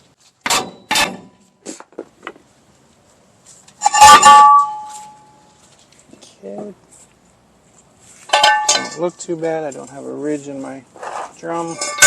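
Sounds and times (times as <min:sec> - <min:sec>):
metal drum clattering and ringing: 0:03.8 - 0:05.2, 0:08.3 - 0:09.2, 0:11.7 - 0:12.0.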